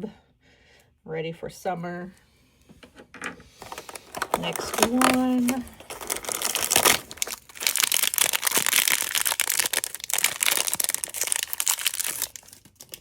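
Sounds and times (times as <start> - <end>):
packaging being torn open: 3.6 - 13.0.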